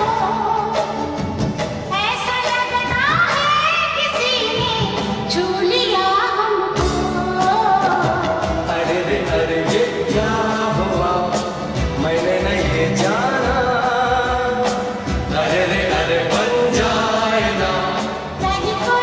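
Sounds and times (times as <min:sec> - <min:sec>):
film song played by band: 0:00.0 - 0:19.0
steady drum beat: 0:06.8 - 0:19.0.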